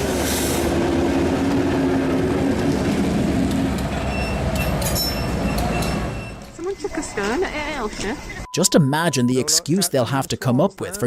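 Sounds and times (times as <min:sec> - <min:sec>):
train wheels rumbling on rails: 0:00.0 - 0:08.3.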